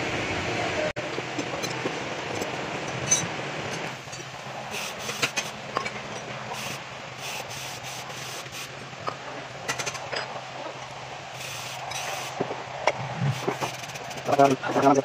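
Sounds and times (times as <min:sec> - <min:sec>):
clicks and scraping on metal: 0:09.0 - 0:10.8.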